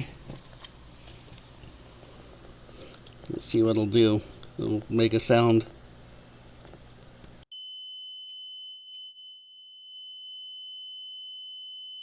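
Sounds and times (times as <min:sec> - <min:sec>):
smoke alarm continuous high tone: 0:07.5 - 0:12.0.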